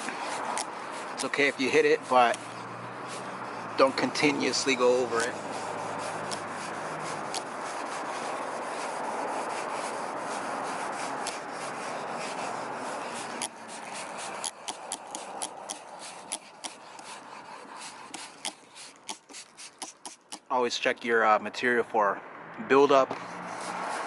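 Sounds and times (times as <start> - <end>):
sandpaper rasping rub: 0.0 - 20.5, 23.1 - 24.0.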